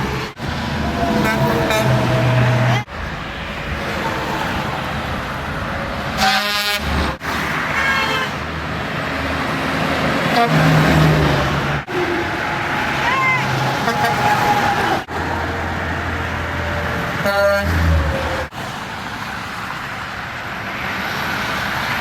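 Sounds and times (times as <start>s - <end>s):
highway traffic rushing: 0.0s - 22.0s
truck air horn: 0.8s - 2.9s, 6.2s - 8.4s, 10.2s - 11.2s, 13.4s - 15.0s, 17.2s - 18.5s.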